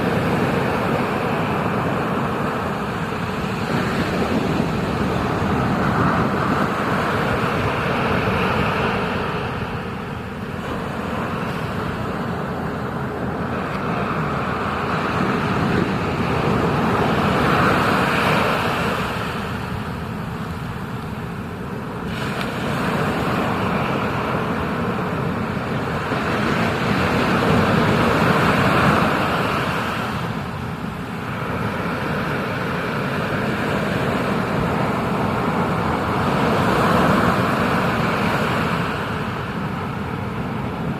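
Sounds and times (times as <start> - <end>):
ocean surf roaring: 0.0 - 40.9.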